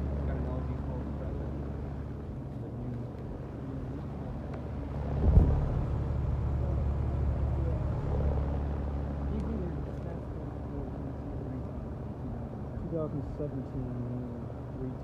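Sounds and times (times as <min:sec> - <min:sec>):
heat pump units humming: 0:00.0 - 0:15.0
low rumble: 0:04.7 - 0:09.1.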